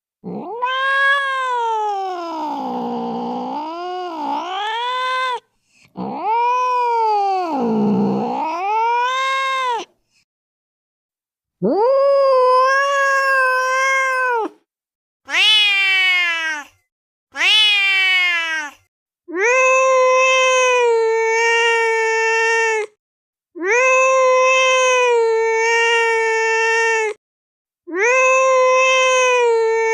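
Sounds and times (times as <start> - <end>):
cat yowling: 0.2 - 9.9, 11.6 - 14.6, 15.3 - 16.7, 17.4 - 22.9, 23.6 - 27.2, 27.9 - 29.9.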